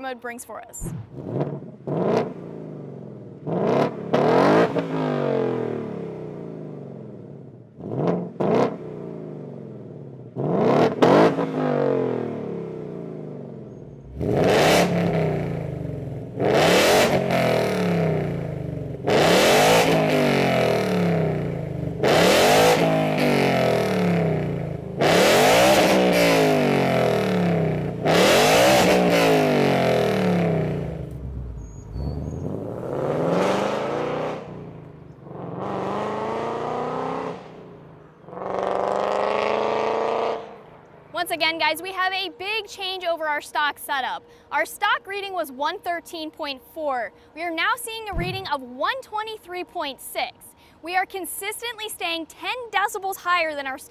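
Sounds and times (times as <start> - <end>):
car engine revving: 0.8 - 40.7.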